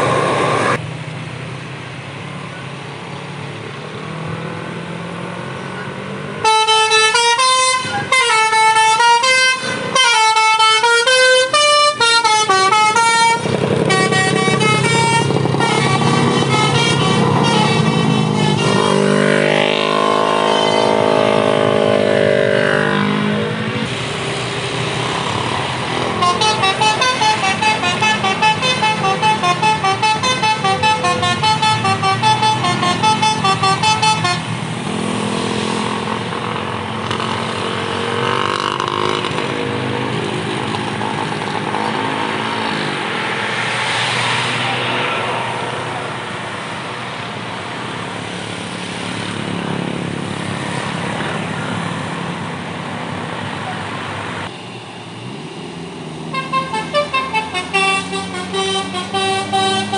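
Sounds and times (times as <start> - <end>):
vehicle engine noise: 0.0 - 59.9
bus air horn melody: 6.4 - 21.6, 26.0 - 34.5, 56.3 - 59.9.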